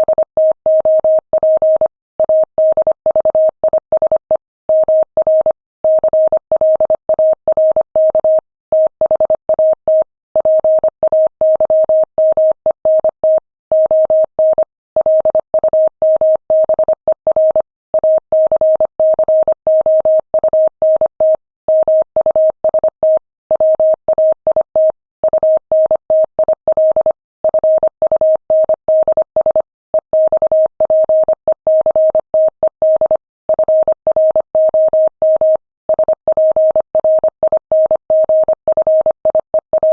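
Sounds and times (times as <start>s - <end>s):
morse code tone: 30.2s - 39.9s.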